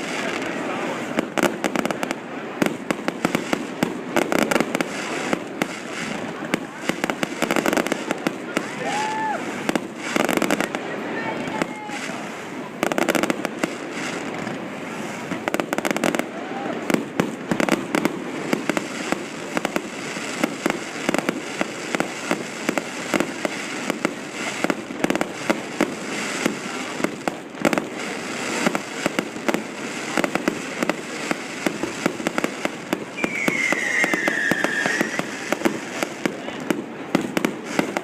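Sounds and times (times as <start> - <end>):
fireworks bangs and crackles: 0.0 - 38.0
high falling whistle: 33.2 - 35.5.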